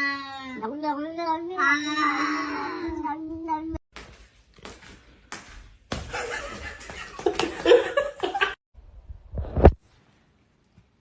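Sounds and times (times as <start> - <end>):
person laughing: 6.1 - 8.6.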